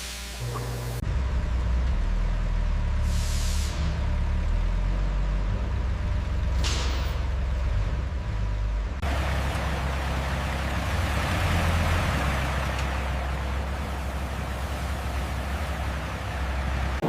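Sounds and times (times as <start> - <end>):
heavy vehicle engine idling: 0.4 - 17.0
air release hiss: 3.0 - 3.9.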